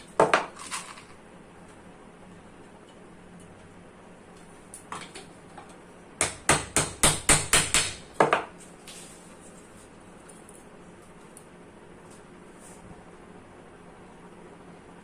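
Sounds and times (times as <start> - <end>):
hammer tapping on metal: 6.2 - 8.5.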